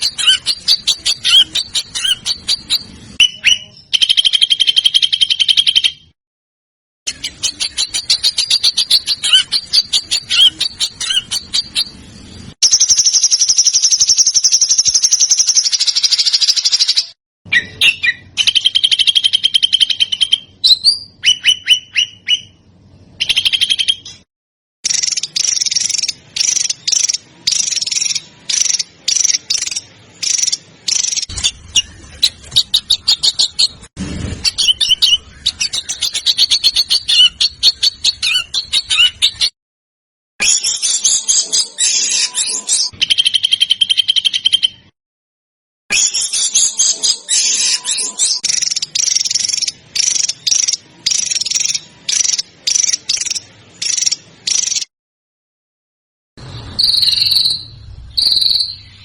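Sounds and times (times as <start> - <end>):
songbirds trilling: 0.0 - 6.0, 7.1 - 12.0, 34.4 - 39.5.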